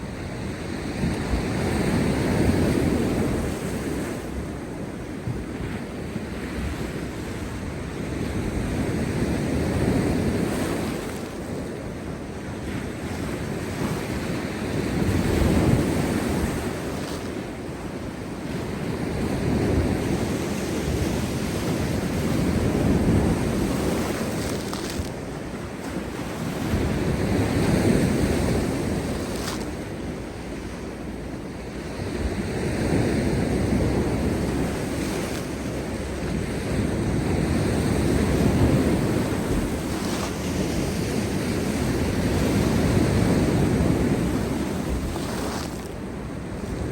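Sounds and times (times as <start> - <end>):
wind buffeting microphone: 0.0 - 46.9
surf crashing on rocks: 5.4 - 46.9.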